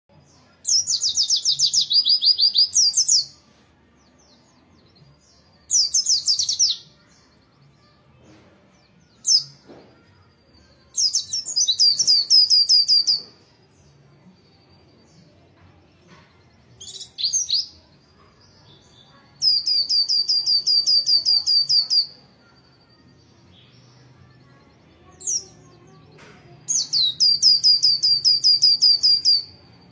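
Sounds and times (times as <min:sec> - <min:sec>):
bird singing high slurred notes: 0:19.4 - 0:22.2, 0:26.7 - 0:29.6.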